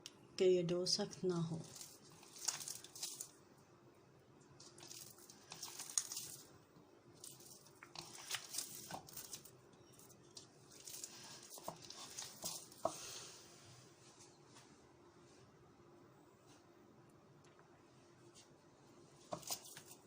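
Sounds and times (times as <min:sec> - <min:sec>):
hands kneading dough: 0:01.4 - 0:03.6, 0:04.3 - 0:14.3, 0:18.3 - 0:20.0.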